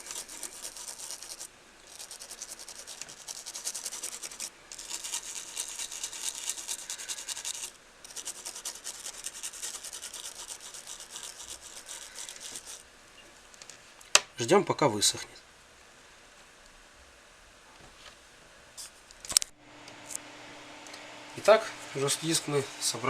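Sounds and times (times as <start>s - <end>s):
small brush scrubbing circuit board: 0.0s - 12.8s.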